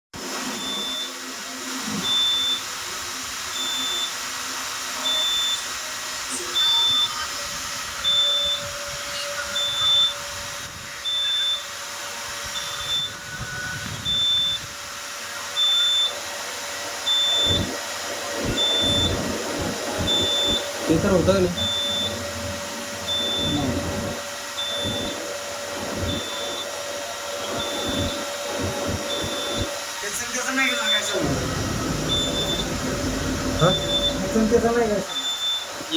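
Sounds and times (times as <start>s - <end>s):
steady hum and hiss: 0.2s - 35.9s
fire alarm beeps: 0.6s - 1.2s, 2.0s - 2.7s, 3.6s - 4.2s, 5.0s - 5.7s, 8.0s - 10.2s, 11.0s - 11.8s, 12.5s - 14.8s, 15.5s - 16.2s, 17.0s - 17.8s, 18.5s - 19.3s, 20.0s - 25.4s, 26.0s - 28.4s, 29.0s - 29.8s, 30.7s - 32.9s, 33.5s - 35.9s.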